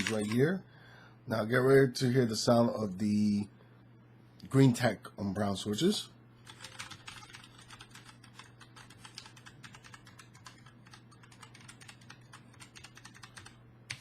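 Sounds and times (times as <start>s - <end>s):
typing on mechanical keyboard: 6.4s - 14.0s.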